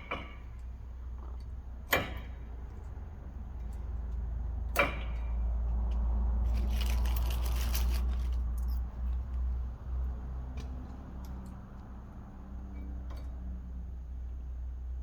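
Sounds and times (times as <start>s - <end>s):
clips scraping and rustling: 6.4s - 9.4s.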